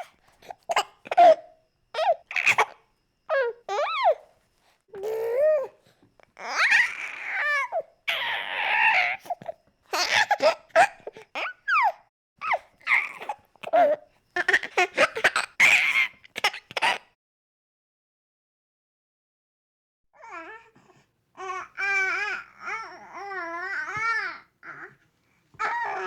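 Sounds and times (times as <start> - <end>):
baby laughing and babbling: 4.9 - 5.7, 8.1 - 17.0, 21.4 - 25.0, 25.6 - 26.0.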